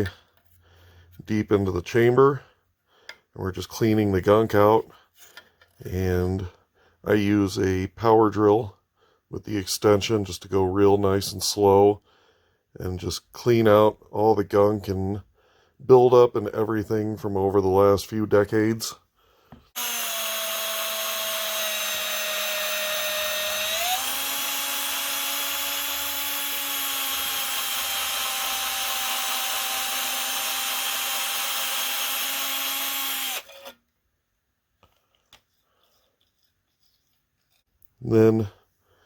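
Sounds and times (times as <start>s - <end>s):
power drill motor whine: 19.8s - 33.8s.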